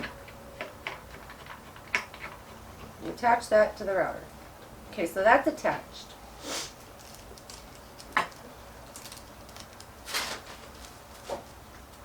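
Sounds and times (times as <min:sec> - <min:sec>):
scraping rustle: 0:06.7 - 0:11.6.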